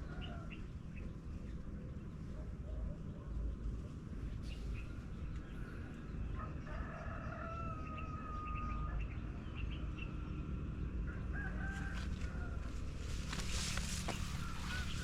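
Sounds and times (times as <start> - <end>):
rooster crowing: 6.4 - 8.9, 11.1 - 15.0.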